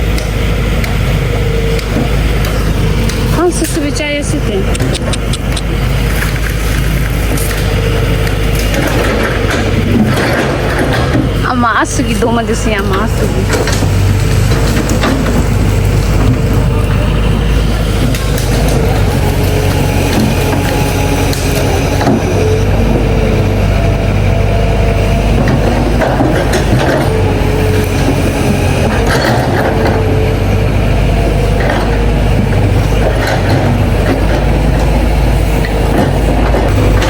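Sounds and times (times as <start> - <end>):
excavator diesel engine: 0.0 - 37.0
hydraulic whine: 0.0 - 37.0
knocks and scrapes: 4.8 - 11.4.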